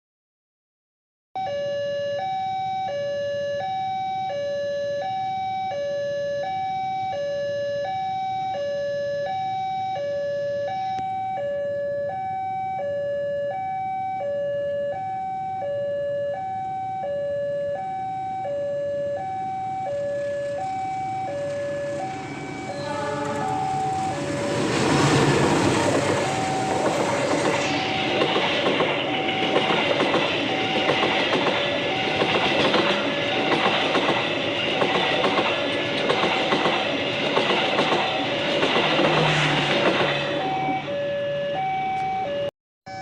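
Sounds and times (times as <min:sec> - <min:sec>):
level crossing two-tone alarm: 0:01.4 - 0:32.7, 0:40.2 - 0:43.0
low train rumble: 0:17.6 - 0:41.7.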